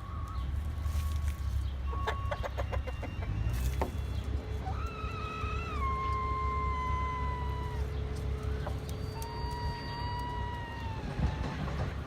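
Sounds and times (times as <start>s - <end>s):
chickens clucking: 0.2s - 10.3s
rooster crowing: 4.6s - 11.9s.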